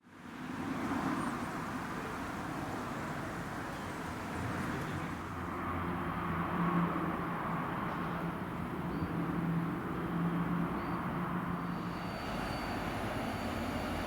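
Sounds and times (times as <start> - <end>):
distant diesel locomotive drone: 8.0 - 14.0.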